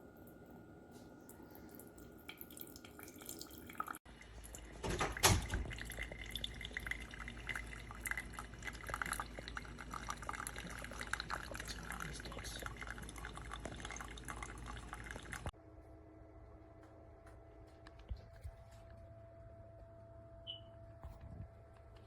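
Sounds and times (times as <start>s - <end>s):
coffee dripping into a cup: 0.0s - 15.5s.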